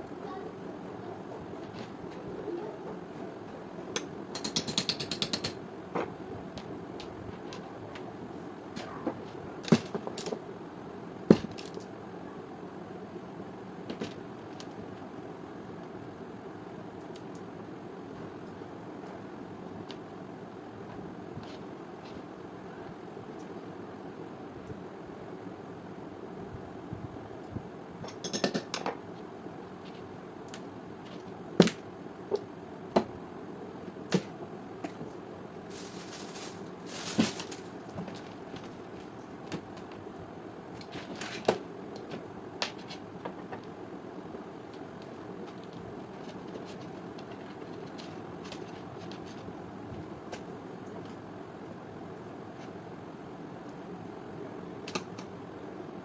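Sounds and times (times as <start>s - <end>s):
steady low hiss: 0.0s - 56.0s
hard objects clicking and knocking: 4.0s - 7.6s, 28.0s - 29.0s
rustling hiss: 35.6s - 39.4s.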